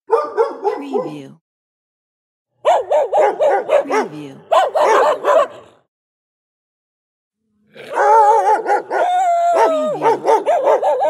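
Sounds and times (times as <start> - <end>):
dog howling: 7.8 - 11.0.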